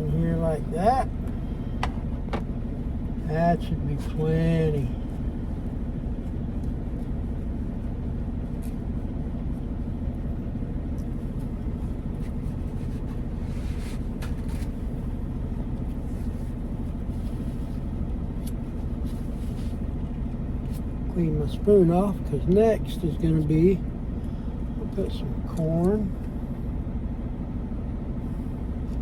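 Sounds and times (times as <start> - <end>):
diesel engine idling: 0.0 - 29.0.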